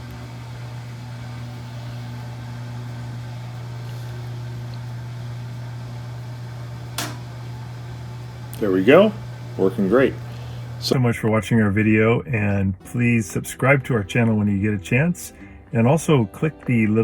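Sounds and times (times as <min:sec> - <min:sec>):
washing machine motor hum: 0:00.0 - 0:11.4
sharp click: 0:07.0 - 0:07.3.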